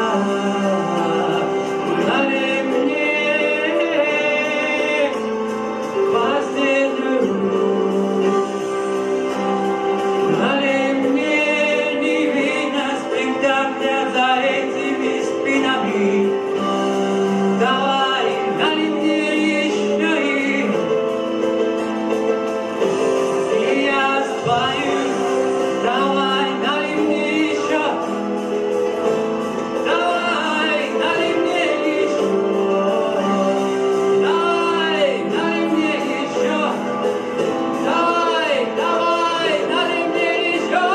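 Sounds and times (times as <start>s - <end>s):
person singing with vibrato: 0.0s - 40.9s
sustained musical accompaniment: 0.0s - 40.9s.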